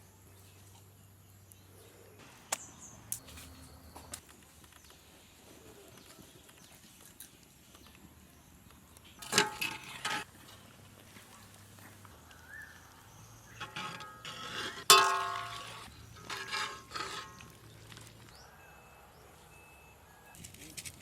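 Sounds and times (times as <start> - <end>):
metal kitchenware clinking: 9.2 - 10.3, 13.4 - 17.6.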